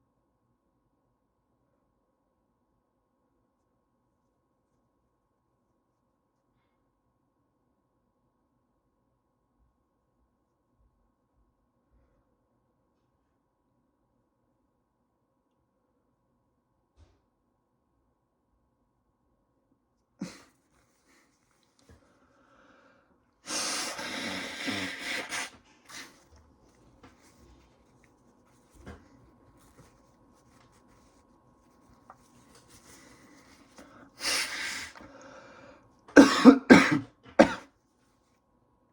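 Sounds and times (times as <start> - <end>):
person sneezing and coughing: 20.2 - 20.5, 23.5 - 26.2, 36.1 - 37.7.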